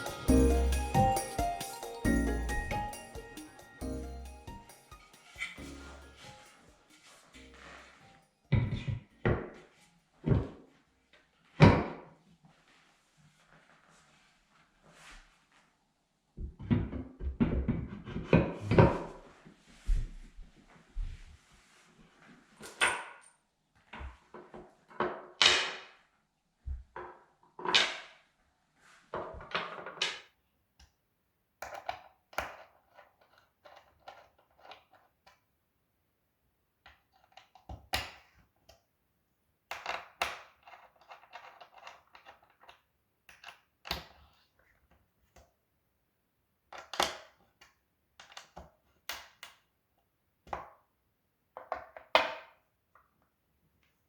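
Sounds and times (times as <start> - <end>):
short scrapes: 5.2 - 8.3.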